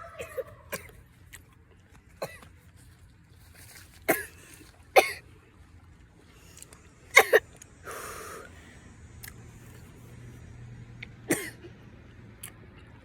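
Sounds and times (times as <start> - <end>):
person coughing: 4.1 - 4.4, 5.0 - 5.2, 7.2 - 7.4, 11.3 - 11.6
breathy exhale: 7.8 - 9.0.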